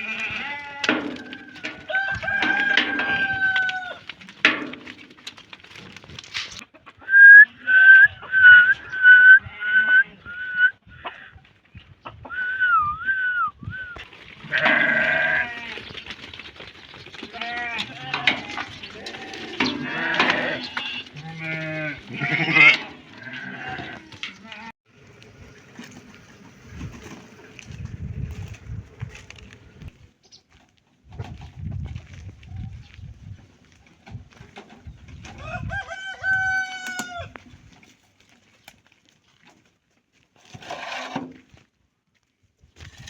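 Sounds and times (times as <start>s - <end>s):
goat kids bleating: 0.0s - 4.0s, 14.5s - 15.8s, 17.2s - 24.8s.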